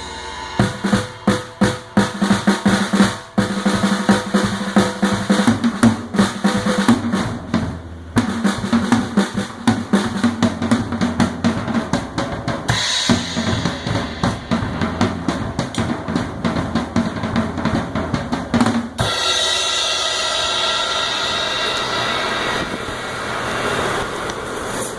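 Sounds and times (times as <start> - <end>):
ringing cymbal wash: 0.0 - 5.3, 19.0 - 24.8
snare and bass drum strokes: 0.0 - 24.9.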